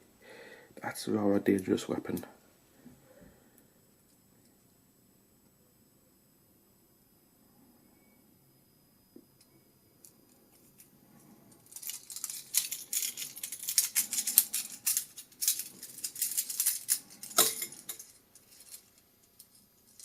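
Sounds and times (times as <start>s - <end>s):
toy handcuffs rattling and clinking: 11.6s - 20.0s.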